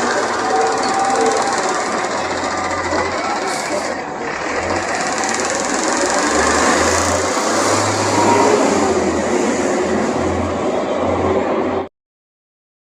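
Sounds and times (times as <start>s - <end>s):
garbage truck engine rattling: 0.0s - 10.6s.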